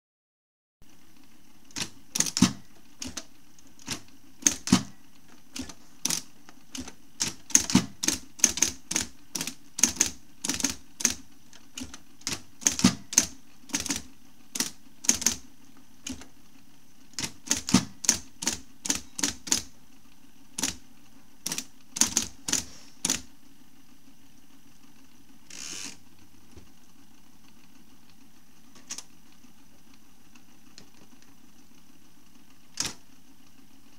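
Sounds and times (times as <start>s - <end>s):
typewriter keystrikes: 1.7s - 3.2s, 3.8s - 5.0s, 5.6s - 11.2s, 11.8s - 15.4s, 17.1s - 19.7s, 20.6s - 20.8s, 21.4s - 23.2s, 32.8s - 33.0s
typewriter motor humming: 1.7s - 16.3s, 17.1s - 19.7s, 20.5s - 20.8s, 21.4s - 23.3s, 25.4s - 26.0s, 32.4s - 33.1s.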